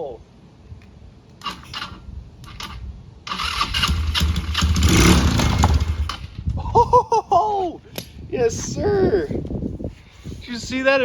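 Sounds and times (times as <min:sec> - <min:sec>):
scooter engine sputtering and revving: 0:02.6 - 0:06.3.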